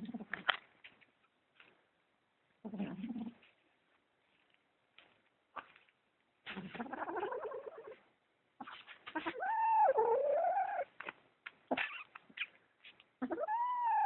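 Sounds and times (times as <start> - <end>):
kitten growling: 9.1 - 10.9, 13.2 - 14.0
kitten yowling: 9.2 - 10.9, 13.2 - 14.0.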